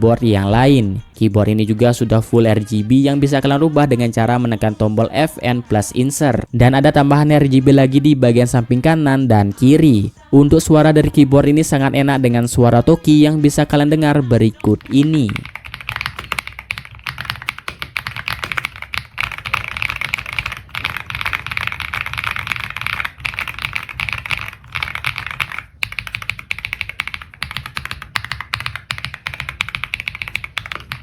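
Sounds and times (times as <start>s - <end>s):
mechanical keyboard typing: 13.4s - 31.0s.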